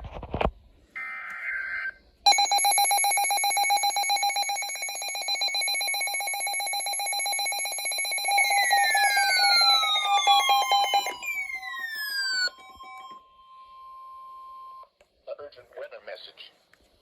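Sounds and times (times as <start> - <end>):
rapidly pulsing electronic beep: 2.3 - 13.1
warbling alert data tones: 2.3 - 13.7
downward-sweeping tones: 8.1 - 14.3.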